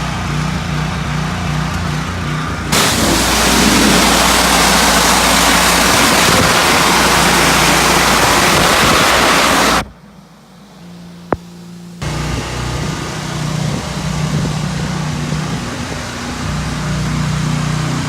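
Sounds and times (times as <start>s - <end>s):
pressure washer water jet hissing: 2.7s - 9.9s.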